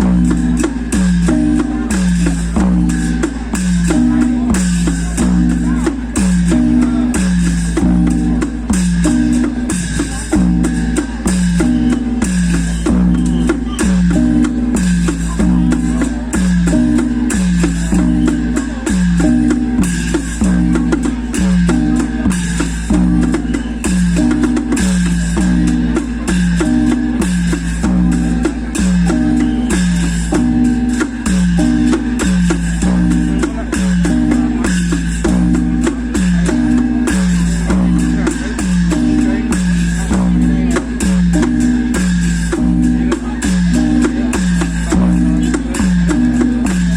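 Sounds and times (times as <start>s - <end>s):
live drum music: 0.0s - 46.9s.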